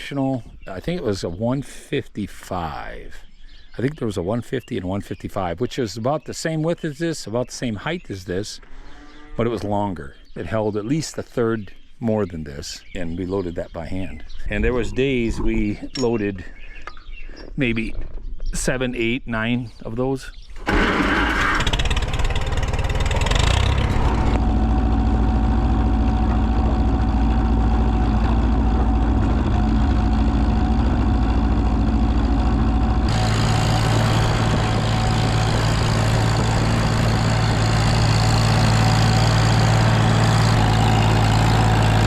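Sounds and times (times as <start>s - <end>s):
farm machine engine running: 20.6s - 42.0s.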